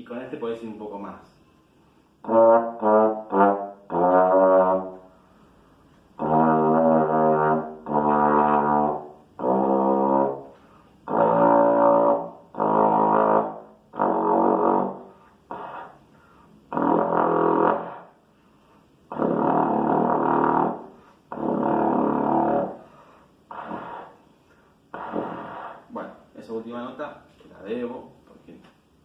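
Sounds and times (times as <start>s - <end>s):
trombone playing low notes: 2.2s - 5.1s, 6.1s - 15.9s, 16.7s - 18.2s, 19.1s - 22.9s
player breathing: 10.5s - 11.0s, 16.0s - 16.6s, 22.8s - 24.9s.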